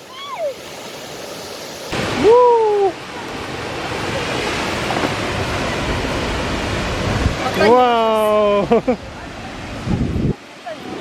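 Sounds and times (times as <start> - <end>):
waterfall roaring: 0.0 - 11.0
person exclaiming: 2.2 - 3.0.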